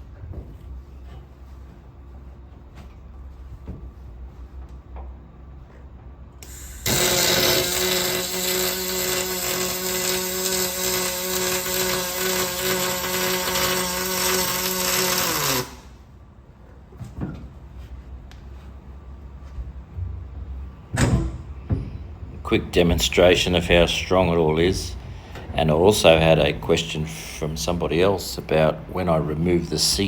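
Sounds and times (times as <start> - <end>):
welding arc buzzing: 6.4 - 16.0.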